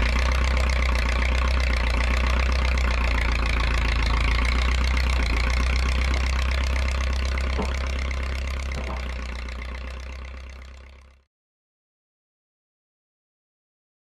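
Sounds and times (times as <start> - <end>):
dozer engine idling: 0.0 - 11.2.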